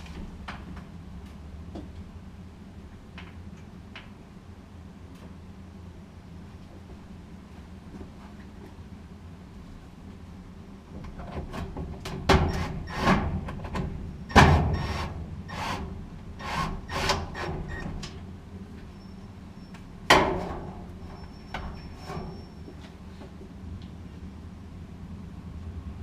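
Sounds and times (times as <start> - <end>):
knocks clunks and scraping of parts: 10.9 - 19.0, 19.7 - 24.0.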